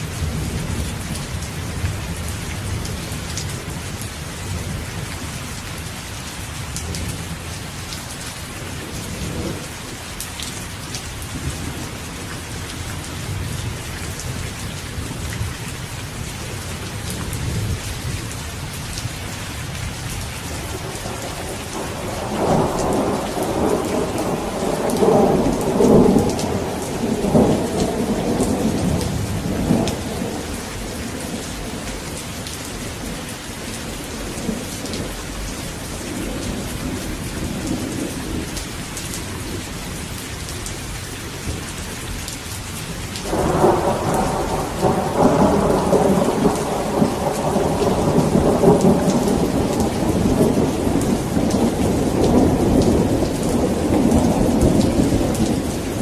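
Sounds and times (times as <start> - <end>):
steady rain: 0.0 - 56.0
rolling thunder: 20.5 - 35.2, 43.2 - 56.0.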